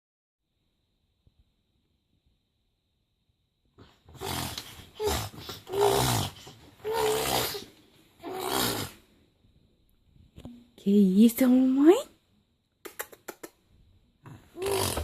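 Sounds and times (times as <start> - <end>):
baby making breathy vocal bursts: 4.2 - 9.0, 14.5 - 15.0.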